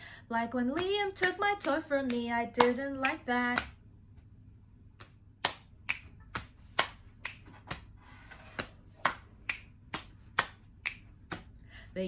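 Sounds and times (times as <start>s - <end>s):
finger snaps: 4.9s - 7.9s, 8.5s - 11.6s.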